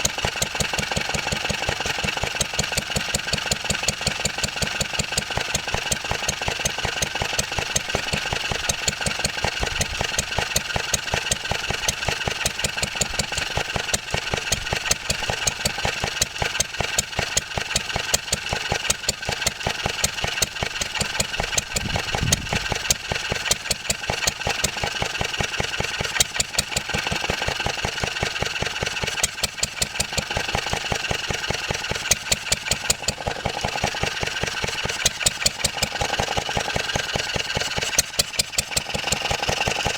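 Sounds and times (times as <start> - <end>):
stationary engine running: 0.0 - 39.9.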